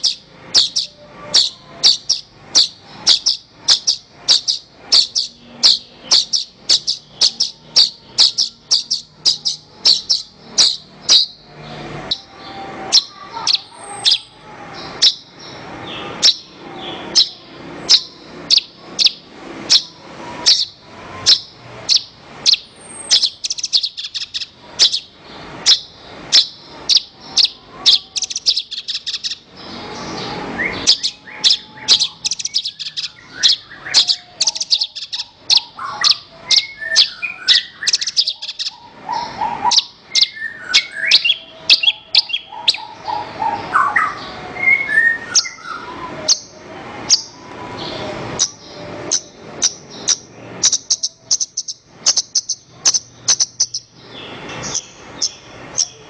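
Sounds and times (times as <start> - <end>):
bush lark singing high chirps: 0.0 - 11.4, 16.2 - 43.2.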